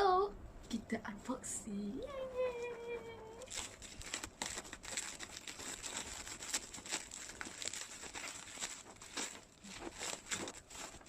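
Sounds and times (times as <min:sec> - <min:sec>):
wrapping being torn and crinkled: 0:02.5 - 0:11.0.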